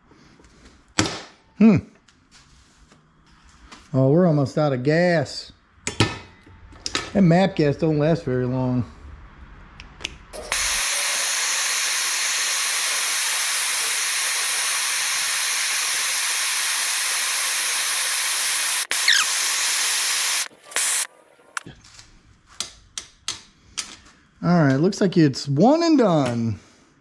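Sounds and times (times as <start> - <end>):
gas torch hissing: 10.4 - 21.7
sharp clicks: 18.3 - 21.7.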